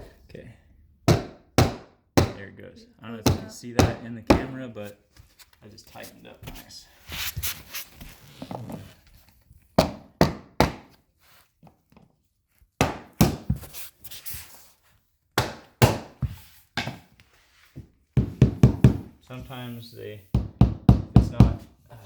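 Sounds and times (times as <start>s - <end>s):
wooden knocks tapping floor planks: 17.8s - 19.6s.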